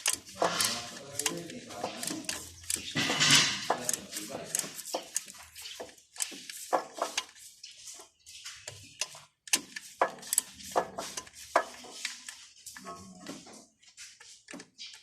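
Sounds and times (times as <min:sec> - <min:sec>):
metal clinks and knocks: 0:00.0 - 0:05.9.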